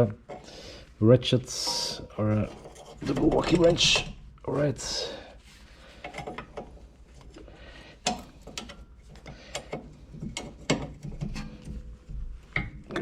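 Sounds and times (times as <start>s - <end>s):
wrench clicking and knocking on metal: 8.0s - 11.4s.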